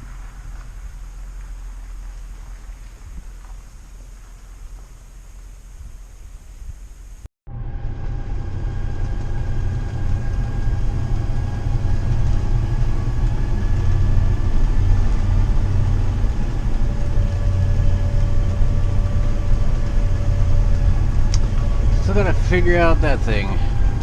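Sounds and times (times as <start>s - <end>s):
faint whining tones: 0.0s - 24.0s
motorhome engine rumbling: 0.0s - 24.0s.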